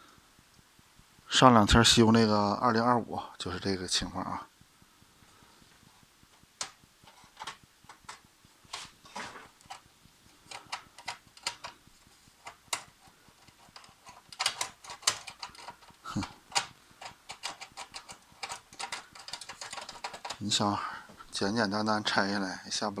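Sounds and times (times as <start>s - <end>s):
plastic and metal parts clicking: 9.1s - 11.8s, 12.4s - 20.5s.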